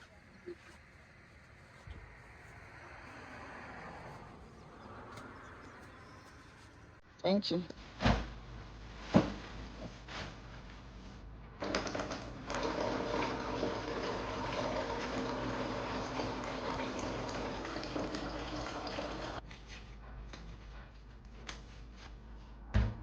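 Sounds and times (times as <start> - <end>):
water running: 11.6 - 19.4.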